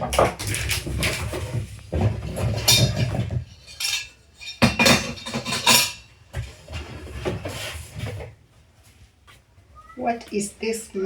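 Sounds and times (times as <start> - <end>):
metal parts and screws clinking: 2.4 - 6.1.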